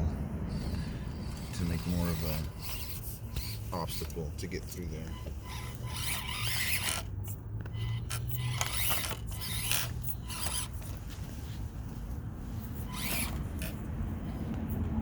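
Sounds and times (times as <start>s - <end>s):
small electric motors whirring: 0.0s - 15.0s
plastic clicks and scrapes on rock: 5.0s - 11.0s.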